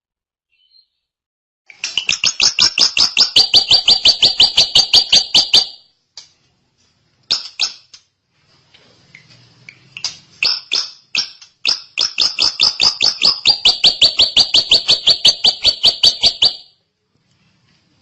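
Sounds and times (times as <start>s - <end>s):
bird singing sharp notes: 10.4s - 16.6s.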